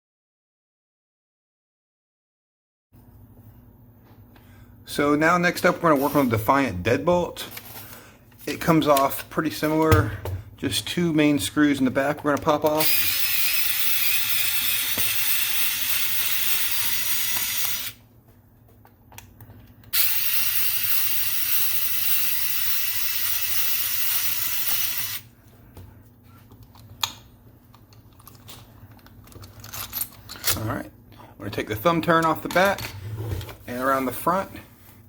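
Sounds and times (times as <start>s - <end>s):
power drill driving out screws: 12.8s - 18.0s.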